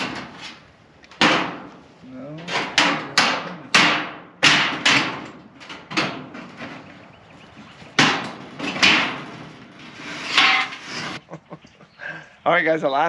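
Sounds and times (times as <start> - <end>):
sharp knocks: 1.1 - 1.8, 2.4 - 7.0, 7.6 - 11.2.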